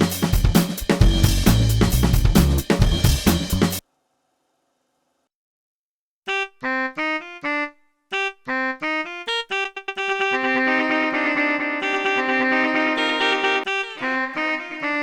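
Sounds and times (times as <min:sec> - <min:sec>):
electric piano chords: 0:10.4 - 0:14.9.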